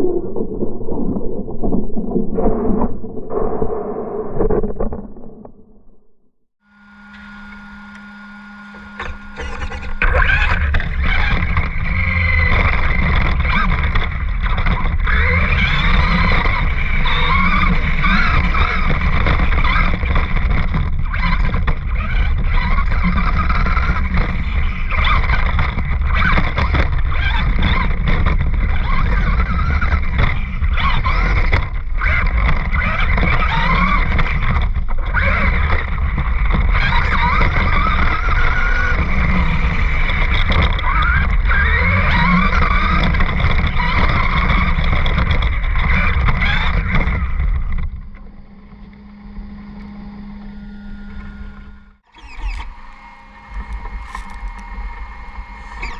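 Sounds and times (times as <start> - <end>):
radio-controlled car motor whining: 6.7 - 55.9
wind rumble on microphone: 10.0 - 49.0.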